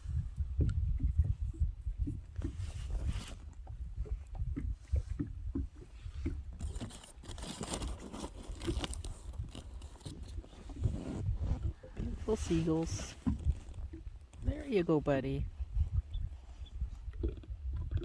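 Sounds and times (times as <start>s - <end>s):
wind on microphone: 0.0s - 18.0s
waves slapping boat hull: 0.5s - 15.4s.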